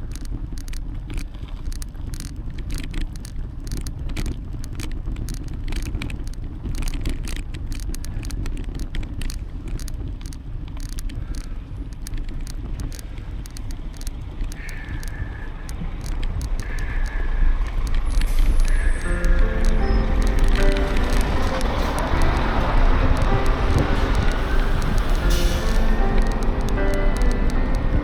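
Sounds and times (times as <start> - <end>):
rattling clicks: 0.0 - 28.0
wind and tyres rumbling: 0.0 - 28.0
short high tones: 18.6 - 28.0.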